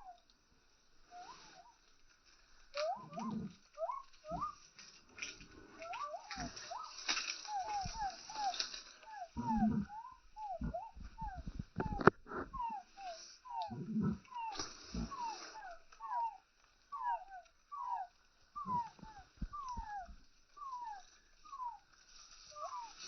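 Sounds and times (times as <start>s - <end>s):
low rustling thumps: 5.5s - 12.8s, 18.6s - 20.6s
chicks peeping: 5.8s - 13.8s.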